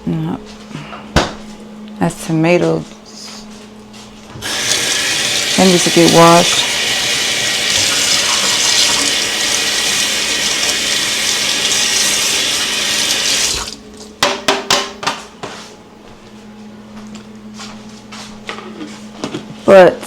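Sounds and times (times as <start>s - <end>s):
tap water splashing into sink: 4.4s - 13.8s
sharp knocks and clatters: 14.2s - 15.3s.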